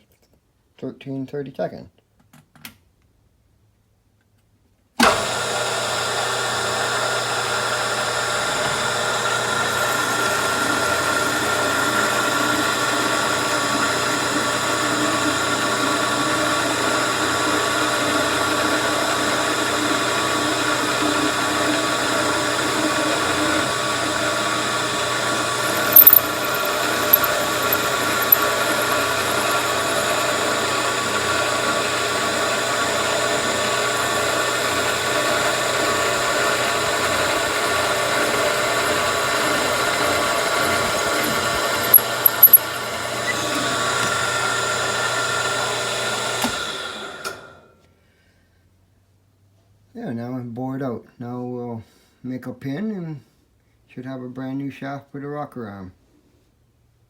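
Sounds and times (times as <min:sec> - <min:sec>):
milling machine whining: 0:05.0 - 0:47.5.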